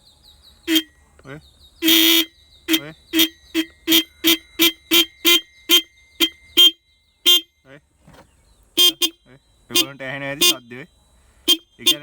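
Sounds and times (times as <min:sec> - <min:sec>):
motorcycle horn short blasts: 0:00.7 - 0:01.0, 0:01.8 - 0:07.7, 0:08.8 - 0:10.8, 0:11.4 - 0:12.0.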